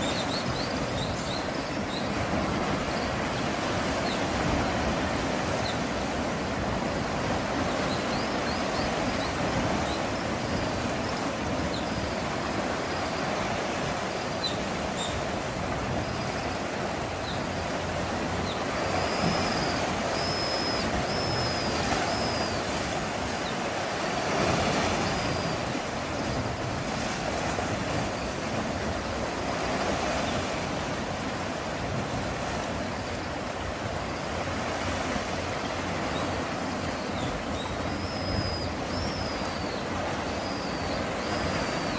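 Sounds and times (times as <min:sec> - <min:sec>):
waves on rocky shore: 0:00.0 - 0:41.9.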